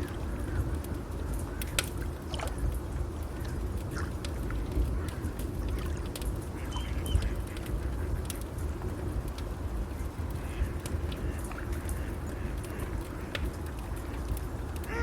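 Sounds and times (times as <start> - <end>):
wood fire crackling: 0.0 - 15.0
rushing water: 1.5 - 4.2.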